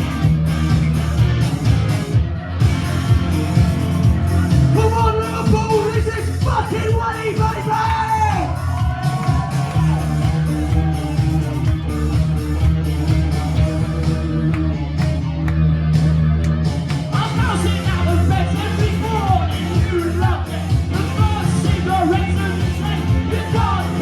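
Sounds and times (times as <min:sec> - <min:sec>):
live rock band playing: 0:00.0 - 0:24.0
vocalist singing: 0:03.1 - 0:10.5, 0:17.1 - 0:24.0.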